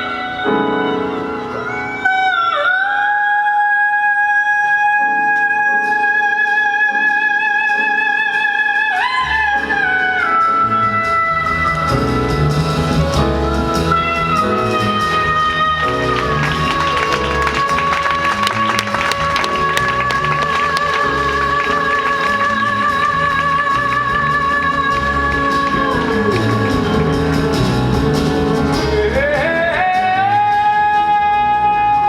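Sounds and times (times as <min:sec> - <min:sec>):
busy percussion: 0:08.9 - 0:32.0
low musical accompaniment: 0:09.1 - 0:32.0
wind instrument holding long notes: 0:11.5 - 0:29.1.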